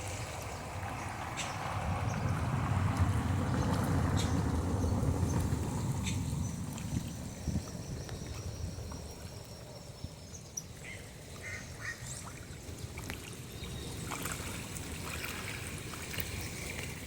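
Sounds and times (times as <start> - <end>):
steady low rumble: 0.0 - 10.3.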